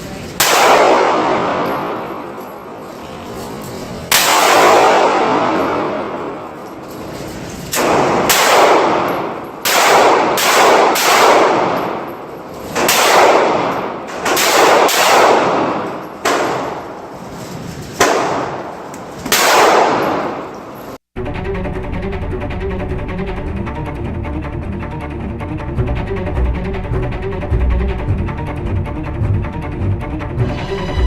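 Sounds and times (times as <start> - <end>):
gunshots echoing indoors: 0.0 - 21.0.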